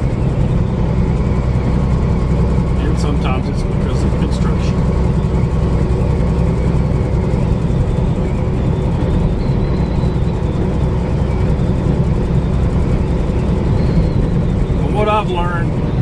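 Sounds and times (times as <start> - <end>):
road noise: 0.0 - 16.0
truck engine drone: 0.0 - 16.0.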